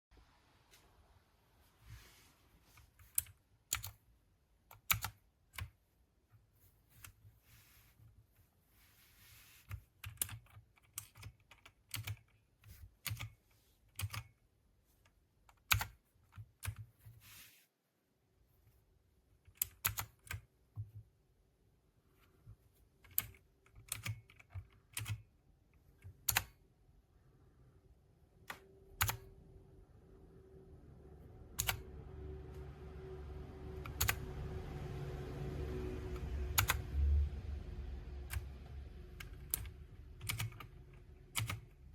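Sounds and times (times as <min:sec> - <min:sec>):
mechanical keyboard key clicks: 0:26.2 - 0:26.6, 0:28.4 - 0:29.3, 0:31.6 - 0:31.8, 0:39.2 - 0:41.8.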